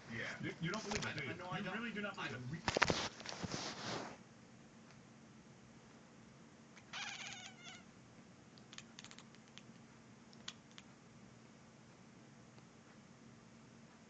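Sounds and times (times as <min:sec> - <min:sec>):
cat meowing: 0:06.8 - 0:07.9
faint clicks: 0:08.5 - 0:11.0.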